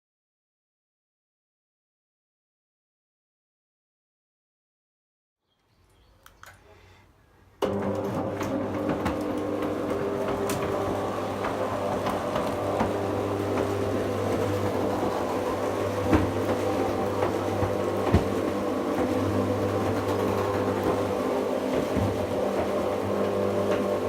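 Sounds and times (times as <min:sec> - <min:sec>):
garage door motor hum: 0:07.6 - 0:24.0.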